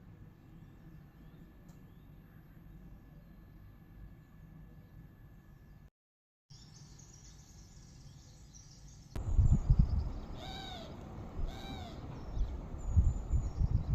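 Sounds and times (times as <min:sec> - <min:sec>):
faint bird twittering: 0:06.5 - 0:13.9
wind rumbling on microphone: 0:09.2 - 0:13.9
animal calling: 0:10.4 - 0:12.1.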